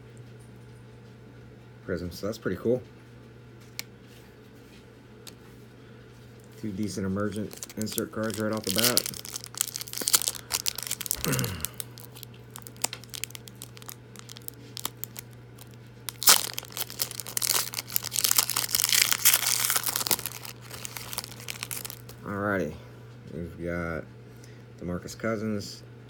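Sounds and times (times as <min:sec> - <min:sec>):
wrapper tearing and crinkling: 0:07.2 - 0:22.2.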